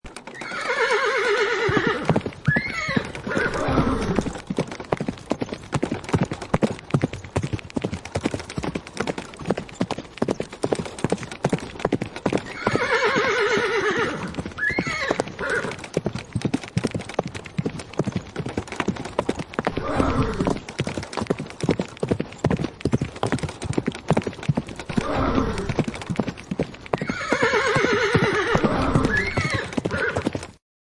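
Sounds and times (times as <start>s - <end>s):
hooves clattering: 0.1s - 30.6s
horse whinnying: 0.3s - 4.4s, 12.4s - 15.9s, 19.6s - 20.6s, 24.9s - 25.8s, 26.9s - 30.4s.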